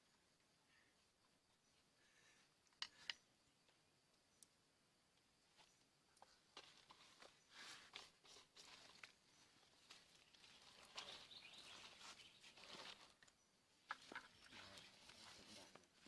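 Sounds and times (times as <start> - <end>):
scraping and rustling: 6.6 - 13.3.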